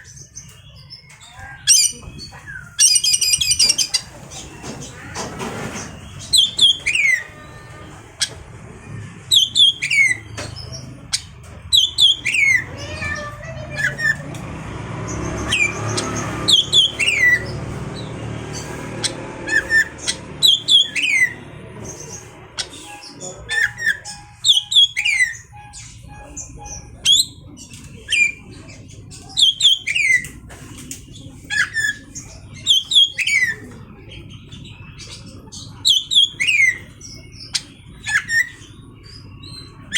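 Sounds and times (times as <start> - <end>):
bird calling sharp notes: 15.1 - 28.4.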